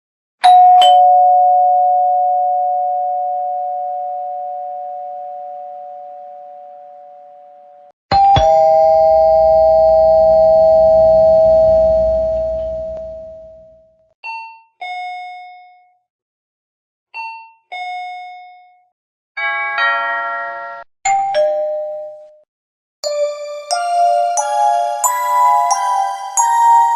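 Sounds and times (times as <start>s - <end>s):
doorbell chimes: 0.4s - 5.7s, 8.2s - 13.5s, 23.0s - 26.9s
low hum: 8.4s - 13.8s.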